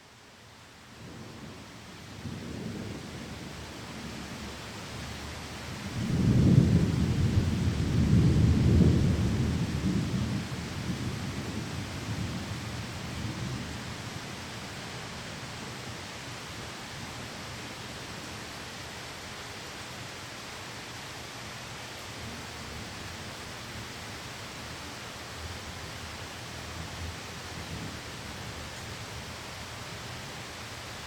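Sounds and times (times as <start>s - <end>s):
heavy rain: 0.0s - 31.0s
rolling thunder: 5.9s - 13.8s.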